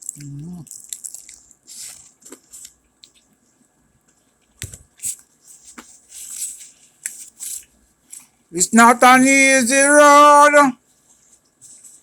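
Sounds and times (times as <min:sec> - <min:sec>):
wet mouth noises: 0:00.0 - 0:03.3
crunchy chewing of fried chicken: 0:00.0 - 0:08.4.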